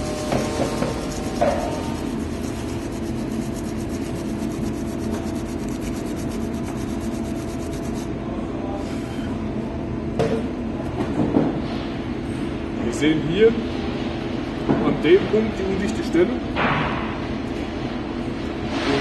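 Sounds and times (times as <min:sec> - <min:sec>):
sandpaper rubbing on wood: 0:00.0 - 0:08.1
steady low hum: 0:00.0 - 0:18.9.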